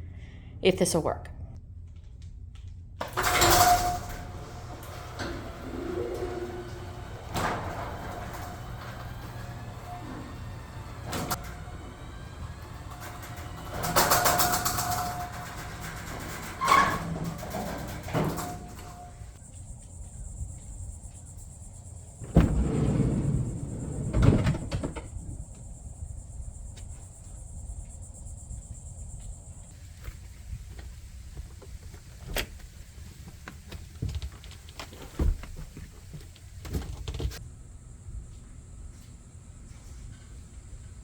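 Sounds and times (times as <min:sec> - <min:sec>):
heavy bumping and scraping: 0:22.2 - 0:25.6.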